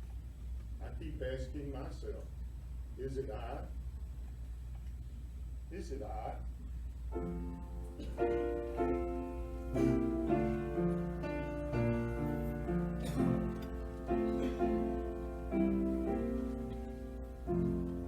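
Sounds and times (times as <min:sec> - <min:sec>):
slow piano-like music: 0:07.1 - 0:18.0.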